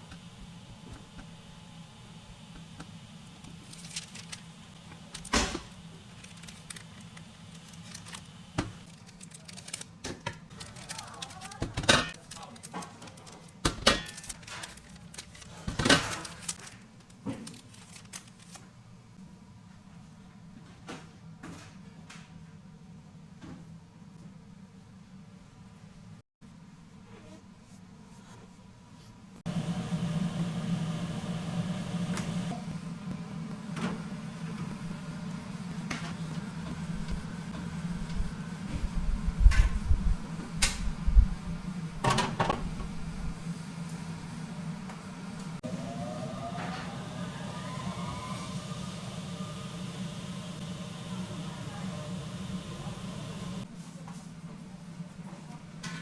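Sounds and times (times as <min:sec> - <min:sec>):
kitchen machine hum: 0:00.0 - 0:18.6, 0:29.4 - 0:53.7.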